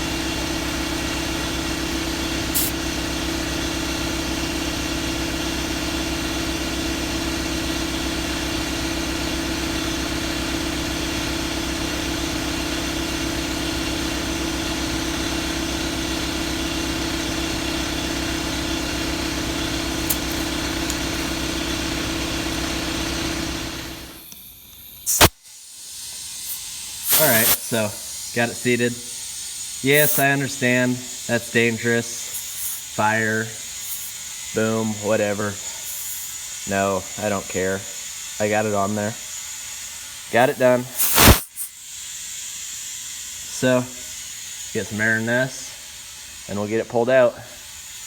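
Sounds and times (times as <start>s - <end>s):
engine idling: 0.0s - 24.7s.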